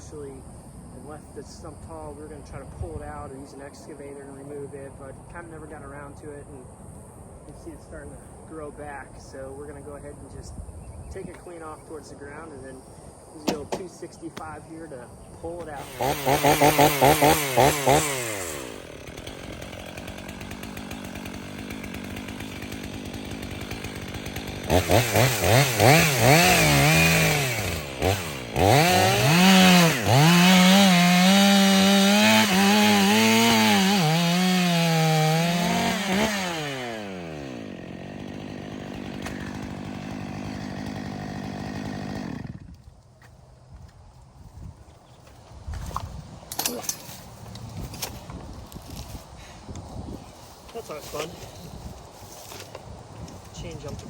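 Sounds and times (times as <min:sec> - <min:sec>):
chainsaw revving and cutting wood: 0:01.0 - 0:06.5, 0:13.4 - 0:43.0, 0:45.9 - 0:54.0.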